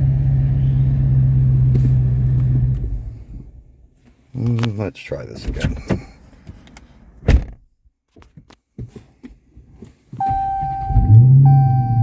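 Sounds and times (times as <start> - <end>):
thunk inside car: 7.2 - 7.7
electronic chime tone: 10.2 - 12.0.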